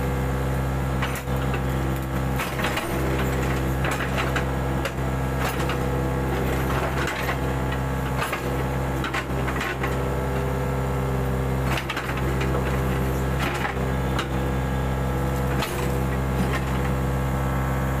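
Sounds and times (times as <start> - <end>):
excavator diesel engine running: 0.0 - 18.0
machine knocks and clanks: 1.0 - 10.4.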